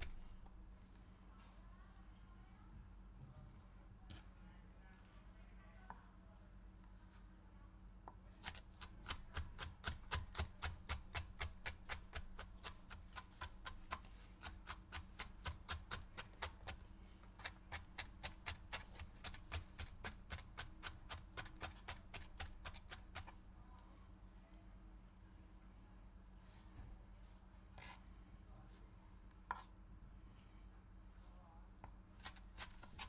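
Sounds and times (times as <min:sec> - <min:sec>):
knife chopping: 0:00.0 - 0:00.4, 0:08.4 - 0:23.3, 0:32.2 - 0:33.0.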